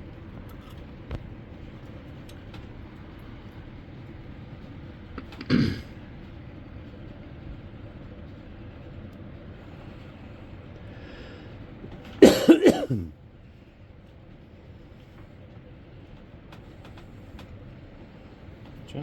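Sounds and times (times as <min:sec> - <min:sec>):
low background hum: 0:00.0 - 0:19.0
person coughing: 0:05.2 - 0:05.9, 0:12.2 - 0:13.1.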